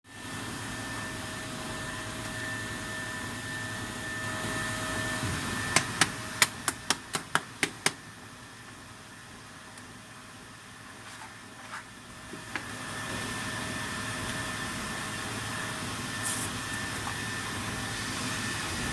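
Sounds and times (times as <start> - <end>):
drilling machine hiss and whine: 0.1 - 6.4, 12.0 - 18.9.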